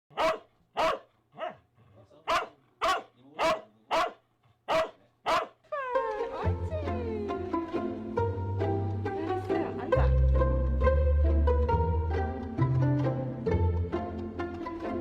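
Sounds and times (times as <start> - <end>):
dog barking: 0.1 - 5.6
plucked string music: 5.8 - 15.0.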